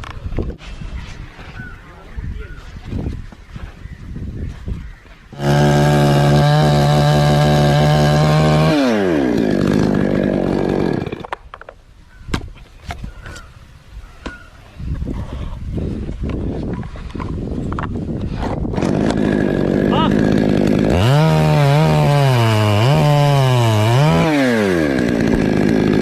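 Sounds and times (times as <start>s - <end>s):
chainsaw running: 5.3s - 11.4s, 18.4s - 26.0s.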